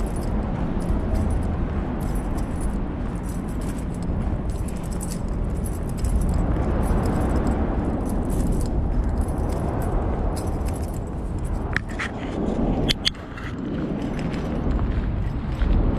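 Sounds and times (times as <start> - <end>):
light jingling and clicking: 0.0 - 12.2
low rumbling noise: 0.0 - 15.9.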